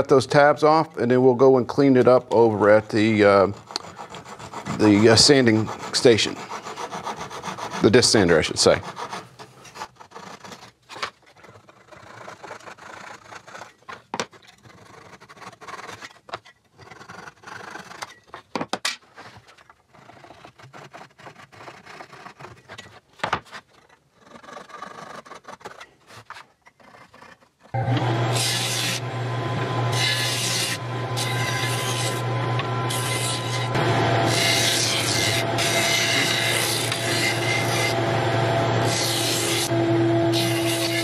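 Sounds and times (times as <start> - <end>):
wood scraping and rubbing: 0.6 - 41.0.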